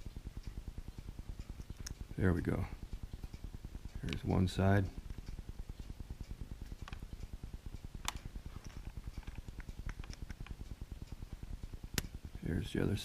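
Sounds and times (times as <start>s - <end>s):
low rapid pulsing hum: 0.0s - 13.0s
small clicks and taps of screwdriver: 8.0s - 10.6s.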